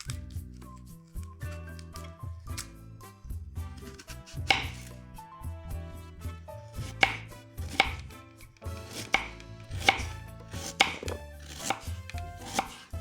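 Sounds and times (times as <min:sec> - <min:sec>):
knife chopping on cutting board: 0:03.8 - 0:05.0, 0:06.8 - 0:13.0.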